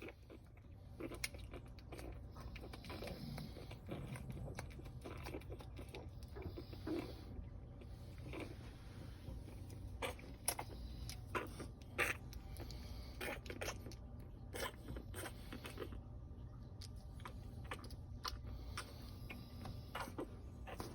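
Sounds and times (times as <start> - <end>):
puppies suckling: 0.0 - 20.9.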